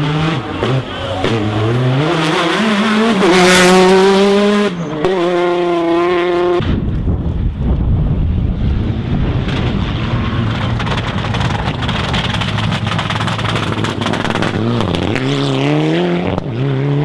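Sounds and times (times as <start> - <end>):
rally car engine accelerating: 0.0 - 6.7, 8.6 - 17.0
rushing wind-like noise: 6.6 - 13.7.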